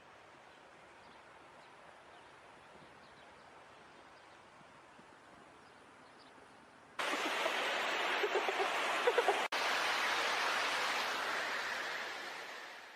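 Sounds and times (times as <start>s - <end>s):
faint hiss: 0.0s - 12.9s
rushing floodwater roar: 7.0s - 12.9s.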